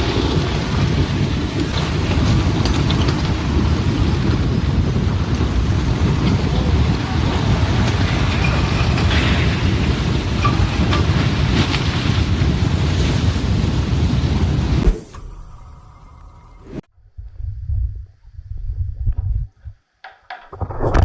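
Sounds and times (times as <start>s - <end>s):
mudslide rumbling: 0.0s - 16.8s.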